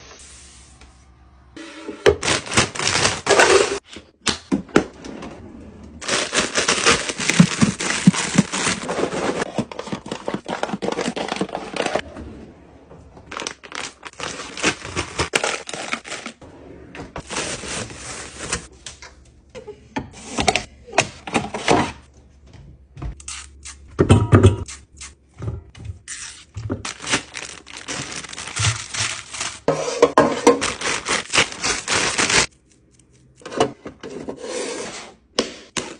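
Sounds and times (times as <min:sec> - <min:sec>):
packaging rustling and tearing: 0:02.2 - 0:03.8, 0:06.0 - 0:12.0, 0:13.3 - 0:16.4, 0:26.1 - 0:29.7, 0:30.4 - 0:32.6.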